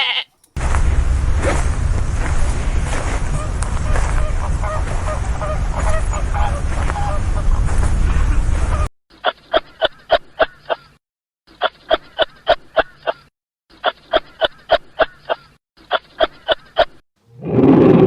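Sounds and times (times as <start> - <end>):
duck quacking: 3.3 - 7.5.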